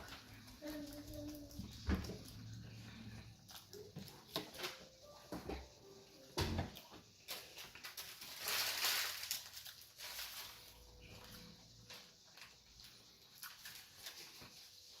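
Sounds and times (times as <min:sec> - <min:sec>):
wet chewing: 0:00.0 - 0:04.6
rustling: 0:00.0 - 0:15.0.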